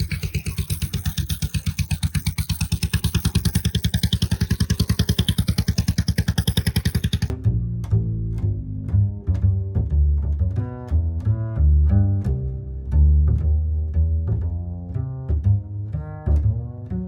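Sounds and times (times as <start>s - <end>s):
engine running steadily: 0.0s - 7.4s
music with plucked double bass: 7.3s - 17.0s.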